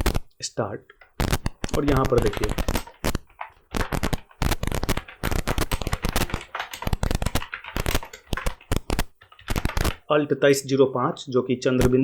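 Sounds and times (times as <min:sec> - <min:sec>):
keyboard keys clattering: 0:01.7 - 0:10.0.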